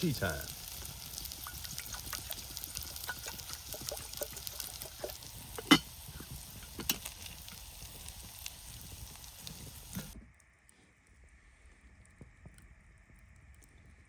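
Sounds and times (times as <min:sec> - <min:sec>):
campfire crackling: 0:00.0 - 0:14.0.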